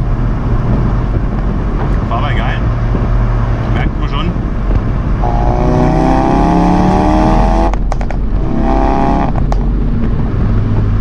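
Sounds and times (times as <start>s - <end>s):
car engine revving: 0.0s - 11.0s
exhaust pops: 4.5s - 11.0s.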